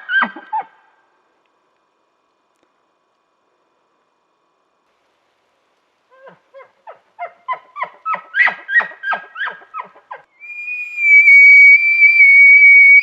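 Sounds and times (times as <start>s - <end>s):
elk bugle whistle: 10.4s - 13.0s.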